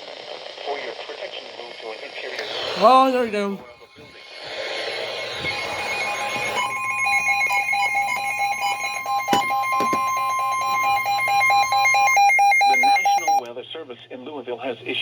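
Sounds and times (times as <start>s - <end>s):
radio static hiss: 0.0s - 7.2s
steady warning alarm tone: 2.4s - 13.4s
rapid repeating beep: 4.4s - 13.4s.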